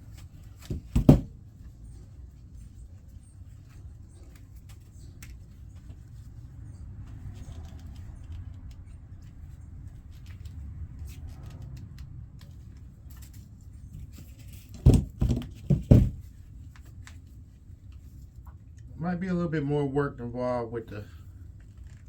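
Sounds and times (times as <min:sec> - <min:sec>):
loud knocks: 0:00.7 - 0:01.3, 0:14.8 - 0:16.2.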